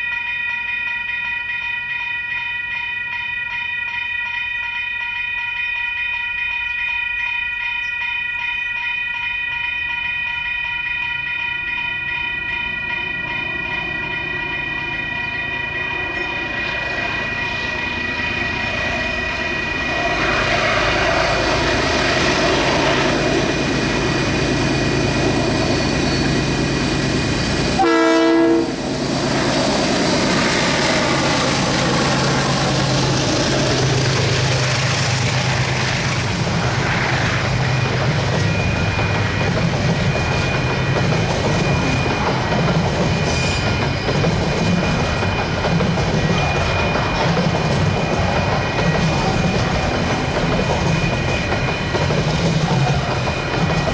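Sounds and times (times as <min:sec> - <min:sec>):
steady high ringing tone: 0:00.0 - 0:53.9
diesel locomotive engine: 0:09.8 - 0:53.9
train horn blast: 0:27.5 - 0:29.0.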